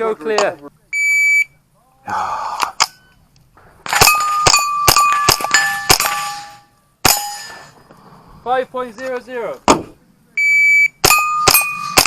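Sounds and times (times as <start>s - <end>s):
rapid rifle shots: 3.8s - 7.3s
steel target plates ringing: 4.0s - 7.8s, 11.0s - 12.0s.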